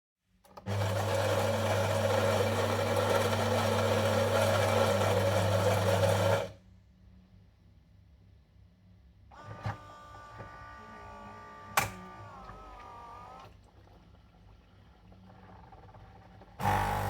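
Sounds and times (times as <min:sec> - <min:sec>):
coffee machine humming and whirring: 0:00.5 - 0:06.6, 0:09.4 - 0:17.0.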